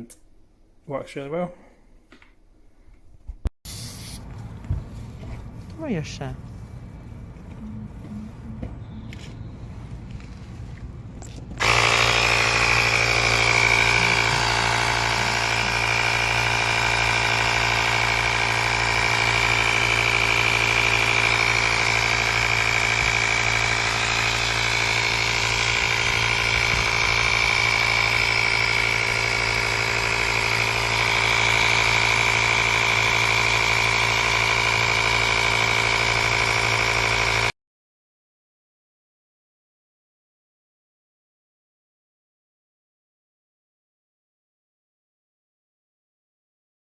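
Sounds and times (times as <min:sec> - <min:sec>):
small compressor buzzing with whine: 0:11.4 - 0:37.5.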